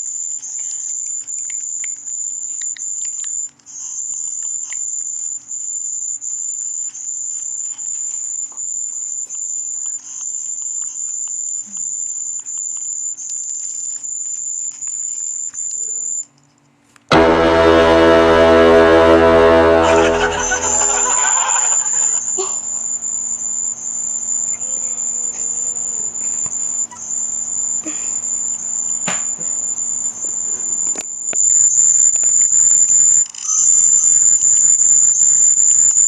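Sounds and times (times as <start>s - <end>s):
low buzzy horn effect: 17.1s - 22.2s.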